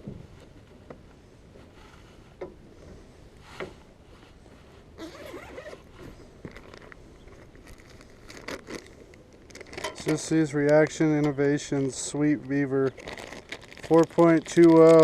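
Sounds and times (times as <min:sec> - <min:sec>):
plastic bag rustling: 0:05.0 - 0:15.0.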